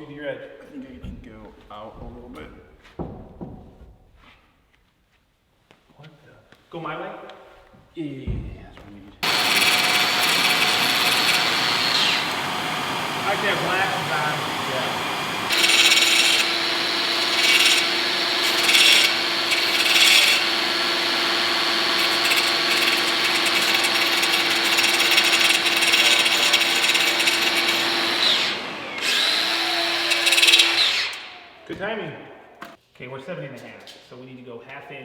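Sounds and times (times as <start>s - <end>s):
angle grinder cutting stone: 9.2s - 31.6s.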